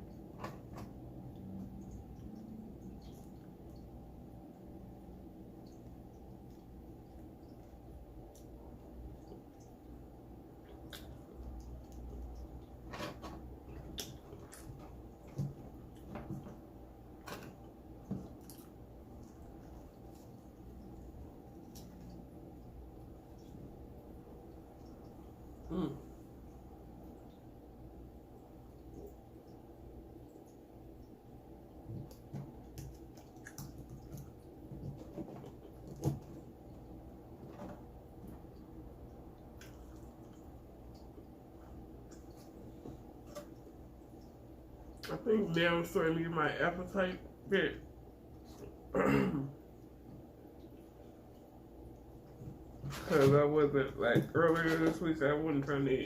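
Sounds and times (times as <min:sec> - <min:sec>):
chewing with wet smacks: 0:00.0 - 0:12.8, 0:17.6 - 0:25.6, 0:28.7 - 0:36.9
person chewing and smacking: 0:10.6 - 0:12.8, 0:31.7 - 0:36.8.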